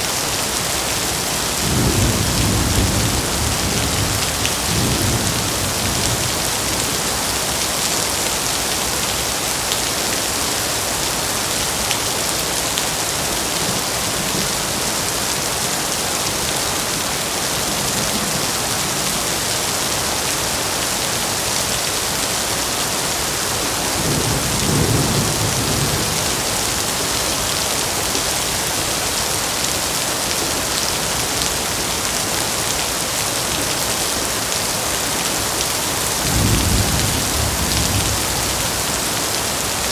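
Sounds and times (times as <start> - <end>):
heavy rain falling: 0.0 - 39.9
low thunder rumbling: 1.6 - 6.7, 23.8 - 27.0, 36.1 - 39.2.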